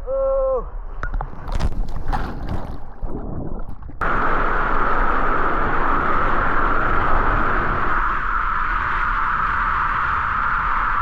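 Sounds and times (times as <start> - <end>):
water splashing and sloshing: 1.0 - 4.0
steady rushing noise: 3.8 - 11.0.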